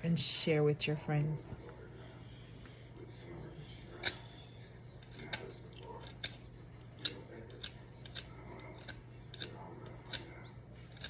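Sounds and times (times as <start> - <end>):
knife shaving pencil wood: 3.7 - 11.0.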